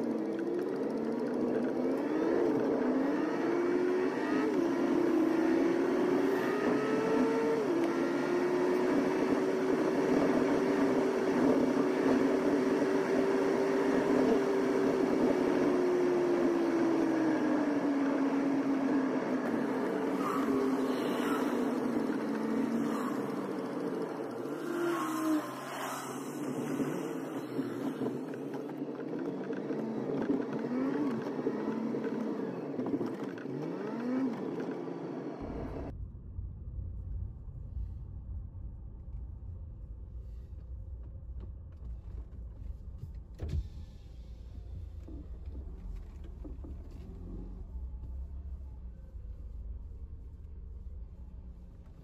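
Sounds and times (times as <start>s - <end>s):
constant rushing background: 0.0s - 52.0s
vehicle engine pulling away: 43.5s - 52.0s.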